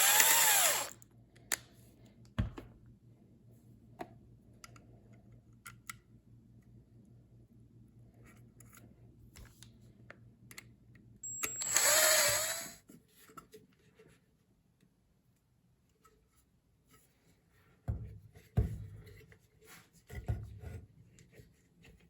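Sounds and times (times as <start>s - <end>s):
power drill running: 0.0s - 1.0s, 11.2s - 12.8s.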